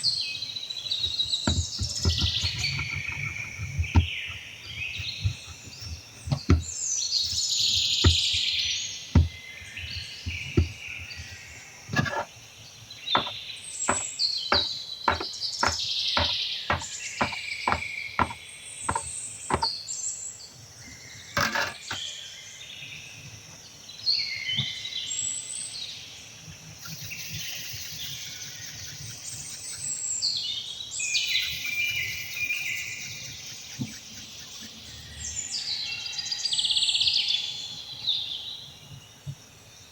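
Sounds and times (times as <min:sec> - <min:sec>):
small birds chirping: 0:00.0 - 0:36.0
sharp knocks: 0:01.4 - 0:04.2, 0:04.9 - 0:06.7, 0:08.0 - 0:08.5, 0:09.2 - 0:11.3, 0:11.9 - 0:12.3, 0:13.2 - 0:19.7, 0:21.4 - 0:22.0.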